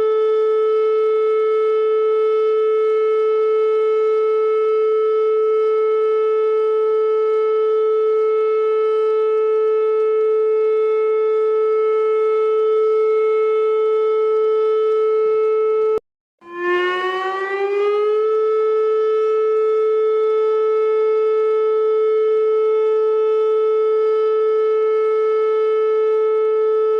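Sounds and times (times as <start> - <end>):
siren sounding an alert: 0.0 - 26.9.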